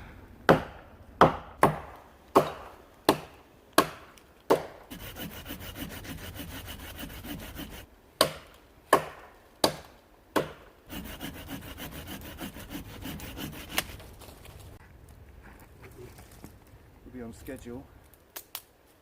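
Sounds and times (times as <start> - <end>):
sharp strikes on wood: 0.5 - 5.1, 7.3 - 11.2
hand saw cutting wood: 4.9 - 7.9, 10.9 - 14.1.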